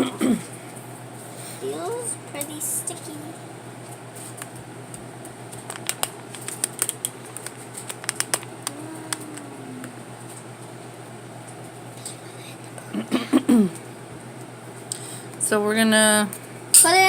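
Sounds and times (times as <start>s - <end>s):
slime clicking and popping: 5.6s - 9.3s.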